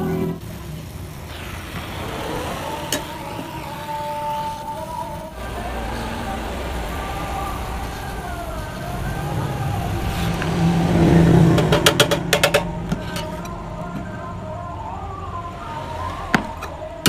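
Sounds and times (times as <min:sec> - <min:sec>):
vehicle engine running: 0:05.2 - 0:17.0
sharp knocks: 0:11.5 - 0:13.3.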